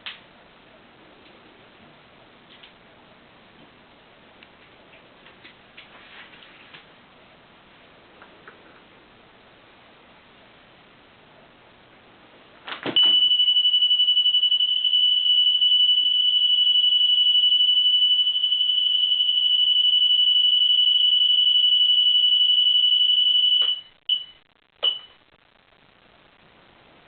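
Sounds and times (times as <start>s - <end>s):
alarm click: 13.0s - 19.0s, 19.6s - 25.2s
motorcycle alarm steady high tone: 13.0s - 25.2s.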